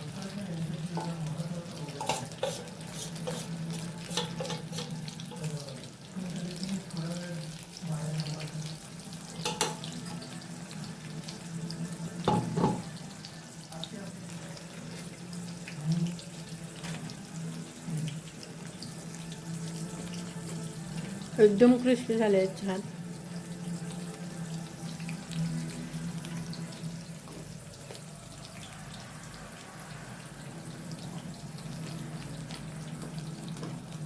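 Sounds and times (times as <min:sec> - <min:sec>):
oil sizzling: 0:00.0 - 0:34.0
utensil knocking against pan: 0:02.0 - 0:05.5, 0:09.4 - 0:09.8, 0:12.3 - 0:12.9.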